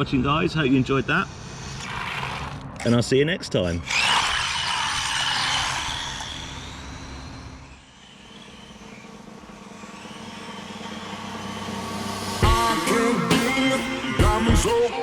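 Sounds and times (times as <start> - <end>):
toy car electric motor whining: 1.1 - 2.9, 3.8 - 15.0
low hum: 6.0 - 15.0
music: 12.2 - 15.0.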